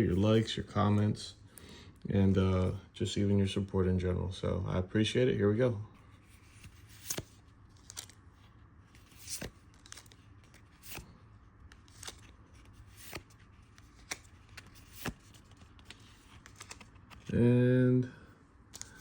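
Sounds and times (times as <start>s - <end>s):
cards flipping: 6.0s - 17.4s, 18.7s - 19.0s.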